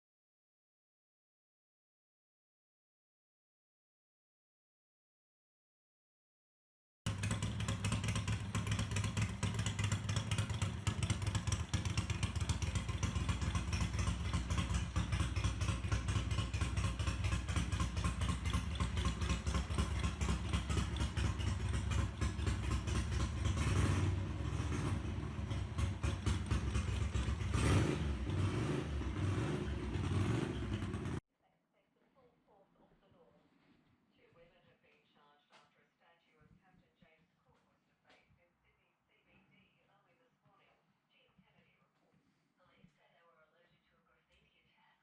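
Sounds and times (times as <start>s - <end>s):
motorcycle engine running: 7.1s - 31.2s.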